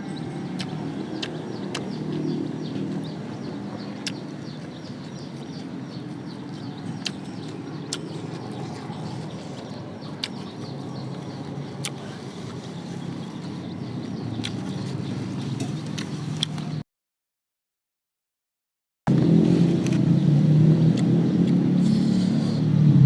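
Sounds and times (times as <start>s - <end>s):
mouth-smacking clicks: 0.6s - 2.3s, 3.9s - 4.2s, 6.5s - 10.6s, 11.8s - 12.1s, 14.4s - 14.8s, 15.6s - 16.8s
person chewing: 0.6s - 3.0s, 4.0s - 4.2s, 6.9s - 12.6s.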